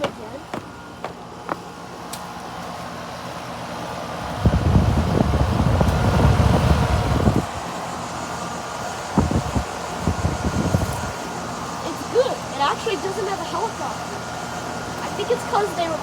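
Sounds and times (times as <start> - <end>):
air conditioner unit humming: 0.0 - 16.0
wind buffeting microphone: 4.1 - 7.7, 8.8 - 11.3.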